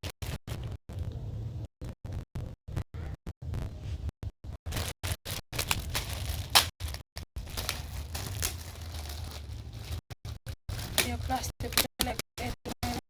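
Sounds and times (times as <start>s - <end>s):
plastic wrapping crinkling and tearing: 4.6s - 13.0s.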